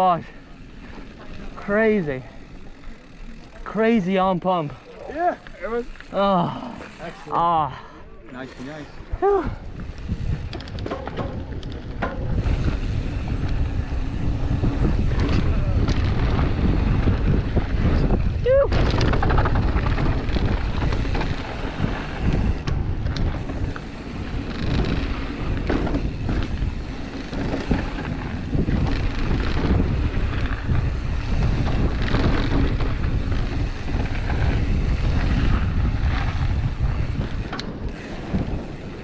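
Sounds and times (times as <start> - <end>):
mountain bike rumbling and rattling: 0.0 - 39.0
wind buffeting microphone: 8.7 - 39.0
bike knocking over bumps: 10.6 - 12.8, 18.6 - 39.0.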